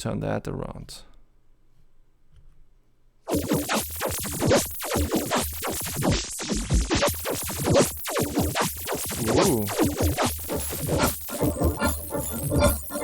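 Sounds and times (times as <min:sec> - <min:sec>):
glittery granular electronic loop: 0:03.3 - 0:13.0.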